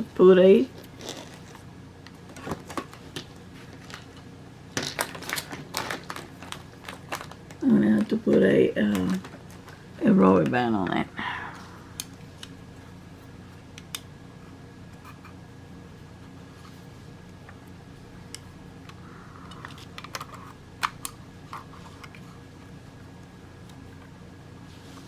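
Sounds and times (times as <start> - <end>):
low room hum: 0.0 - 25.0.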